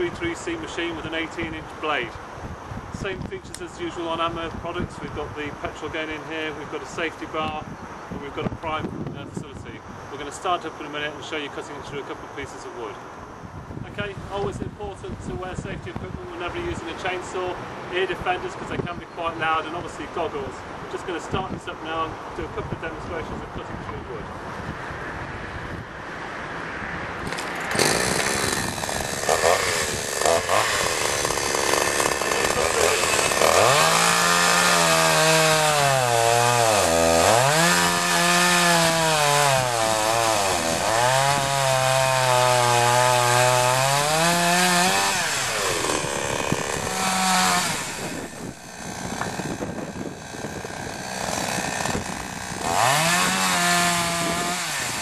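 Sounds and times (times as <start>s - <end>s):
chainsaw cutting wood: 27.2s - 55.0s.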